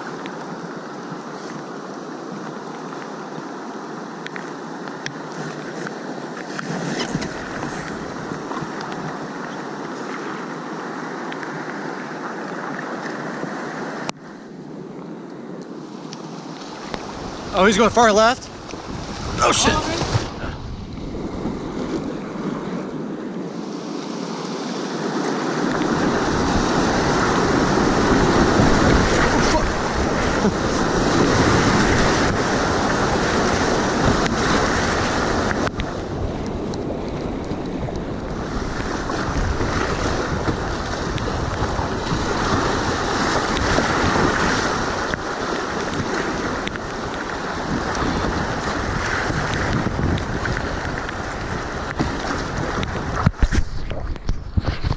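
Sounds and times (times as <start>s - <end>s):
whitewater rapids rushing: 16.4s - 20.6s, 22.0s - 53.3s.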